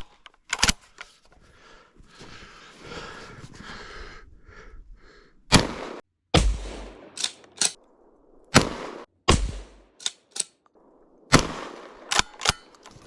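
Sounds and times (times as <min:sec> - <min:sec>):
shotgun blast: 0:05.6 - 0:07.8, 0:08.6 - 0:10.1
loud bang with low thump: 0:06.4 - 0:07.1, 0:09.3 - 0:09.8.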